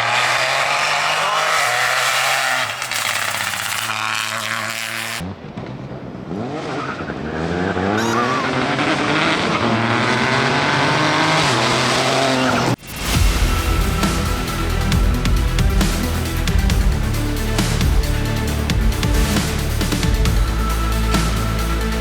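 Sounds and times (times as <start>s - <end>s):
car engine revving: 0.0s - 22.0s
music: 12.8s - 22.0s.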